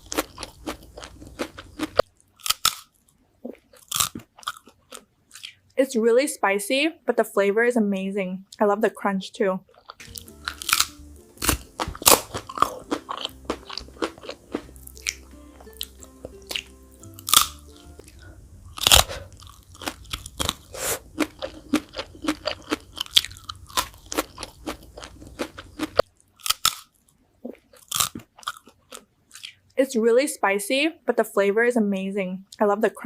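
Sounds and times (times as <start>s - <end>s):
crunchy chewing: 0.0s - 5.6s, 9.7s - 29.6s
soft background music: 10.0s - 20.0s.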